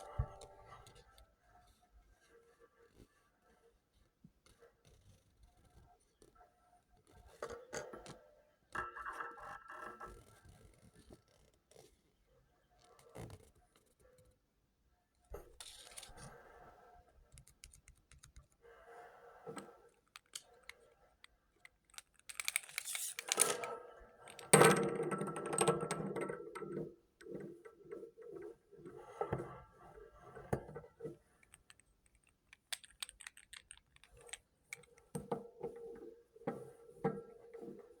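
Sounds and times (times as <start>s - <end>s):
small clicks and taps: 30.6s - 35.8s.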